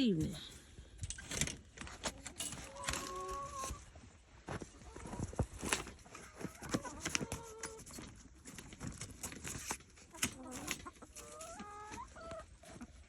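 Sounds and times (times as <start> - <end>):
chickens clucking: 1.9 - 4.0, 4.7 - 7.9, 10.0 - 13.0.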